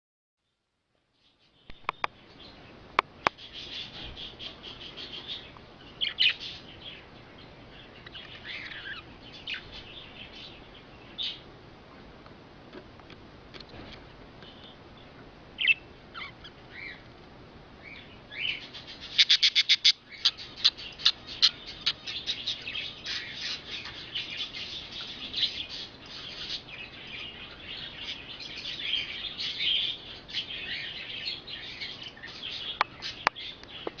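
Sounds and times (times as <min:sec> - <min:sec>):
budgerigar chirping and warbling: 0:03.4 - 0:07.1, 0:07.7 - 0:10.5, 0:15.6 - 0:17.0, 0:17.8 - 0:33.6.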